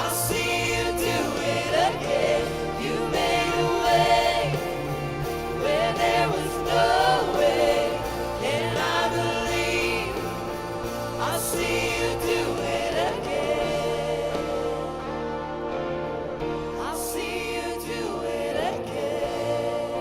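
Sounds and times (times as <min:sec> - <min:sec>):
choir singing gospel song: 0:00.0 - 0:20.0
instrumental accompaniment: 0:00.0 - 0:20.0.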